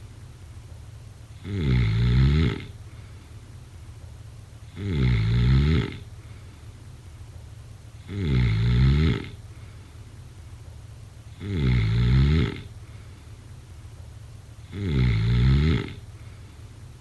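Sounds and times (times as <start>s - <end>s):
low steady hum: 0.0s - 17.0s
person snoring: 1.4s - 2.7s, 4.7s - 6.0s, 8.0s - 9.4s, 11.3s - 12.7s, 14.6s - 16.0s.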